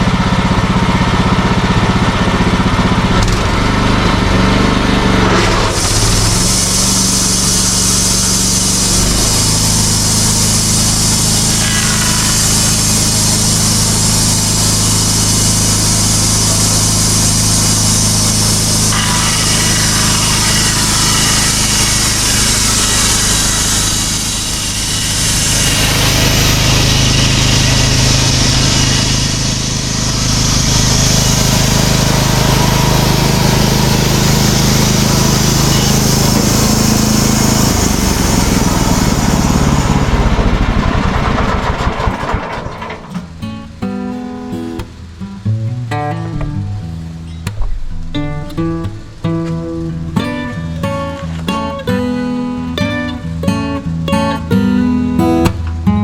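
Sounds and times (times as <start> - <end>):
sawmill engine running: 0.0 - 45.6, 46.6 - 56.0
band blade cutting wood: 5.0 - 40.2.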